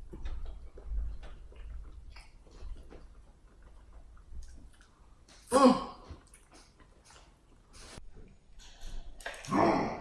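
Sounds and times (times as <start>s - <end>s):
person chewing and eating: 0.0s - 8.0s.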